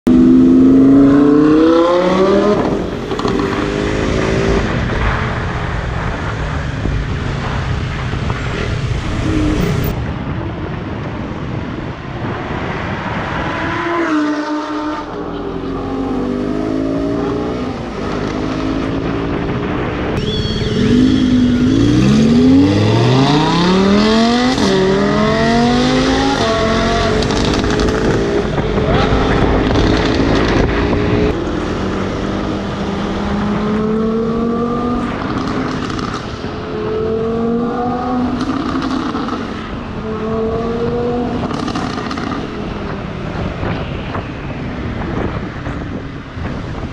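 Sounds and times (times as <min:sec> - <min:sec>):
sports car revving and accelerating: 0:00.1 - 0:09.9, 0:20.6 - 0:42.9.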